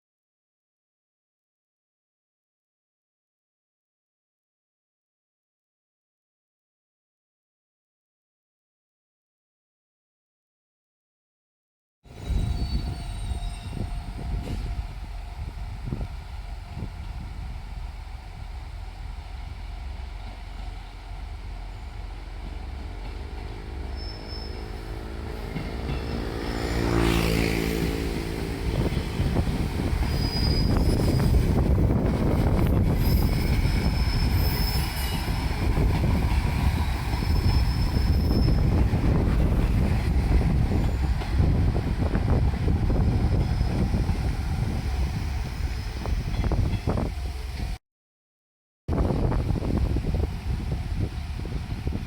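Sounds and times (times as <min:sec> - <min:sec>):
diesel train passing: 0:12.1 - 0:47.8, 0:48.9 - 0:52.0
high wheel squeals: 0:12.2 - 0:14.6, 0:23.8 - 0:27.9, 0:29.9 - 0:31.6, 0:32.8 - 0:35.5, 0:36.8 - 0:38.8.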